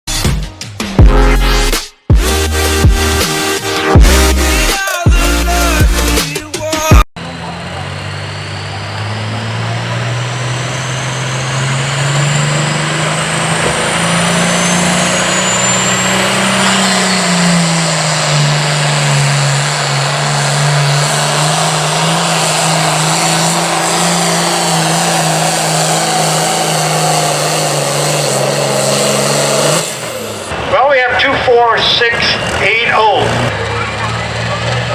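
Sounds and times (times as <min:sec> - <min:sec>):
diesel tractor engine at full throttle: 0:07.2 - 0:34.9.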